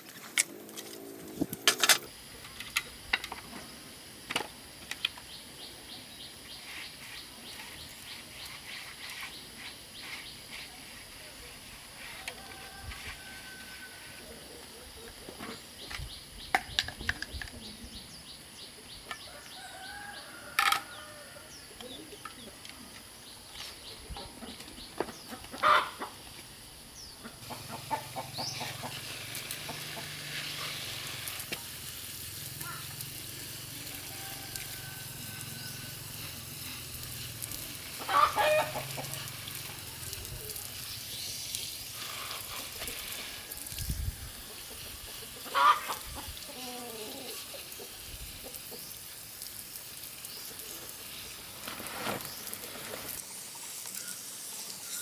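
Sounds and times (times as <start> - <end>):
chickens calling: 24.1 - 26.2, 27.2 - 31.2, 37.8 - 39.8, 42.0 - 48.8.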